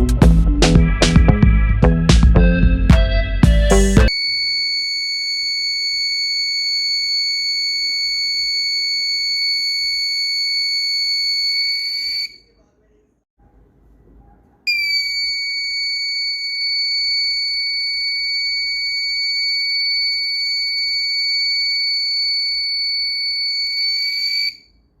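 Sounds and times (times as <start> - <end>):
shrill electronic buzzer tone: 3.0 - 12.5, 14.7 - 24.8.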